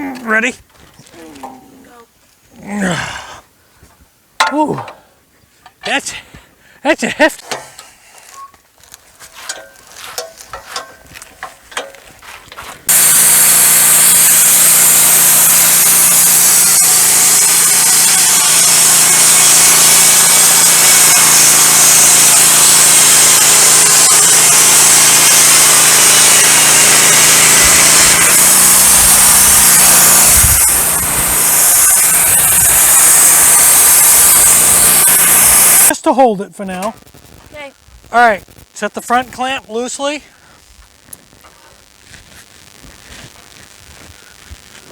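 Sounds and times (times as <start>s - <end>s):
knocks and clatter from handling: 9.5s - 12.7s
sawmill running with high hiss: 12.9s - 35.9s.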